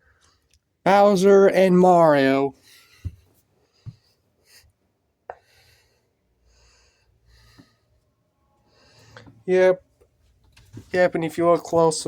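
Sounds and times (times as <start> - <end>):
faint breathing: 2.6 - 9.4.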